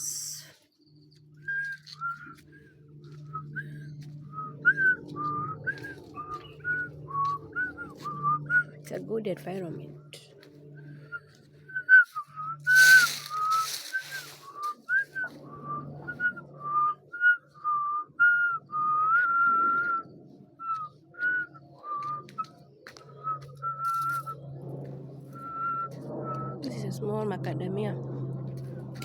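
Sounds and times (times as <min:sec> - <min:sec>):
person whistling a tune: 0:01.4 - 0:02.4, 0:03.2 - 0:08.8, 0:11.1 - 0:20.0
brief rustling: 0:12.7 - 0:14.8.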